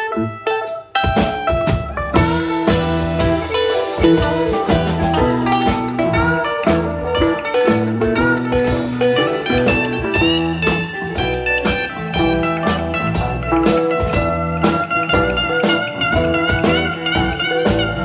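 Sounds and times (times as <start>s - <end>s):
bass: 0.0s - 18.0s
lead guitar with bending notes: 0.0s - 18.0s
steady drum beat: 1.0s - 18.0s.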